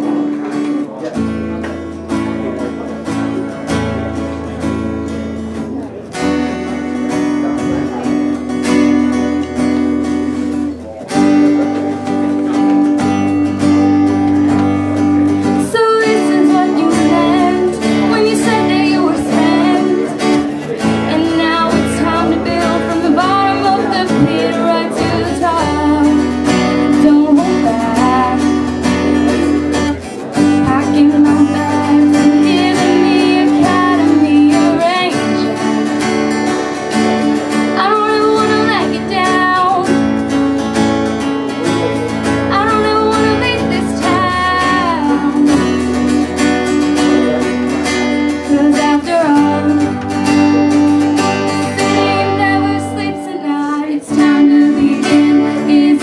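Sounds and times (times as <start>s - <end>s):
acoustic guitar strumming chords: 0.0s - 56.0s
person singing: 10.8s - 40.4s, 41.5s - 56.0s.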